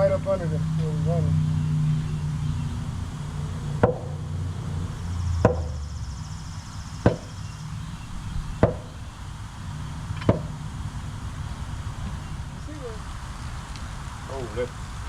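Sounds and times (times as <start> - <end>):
sledgehammer strikes on metal: 3.8 - 4.2, 5.4 - 5.8, 7.0 - 7.4, 8.6 - 8.9, 10.2 - 10.5.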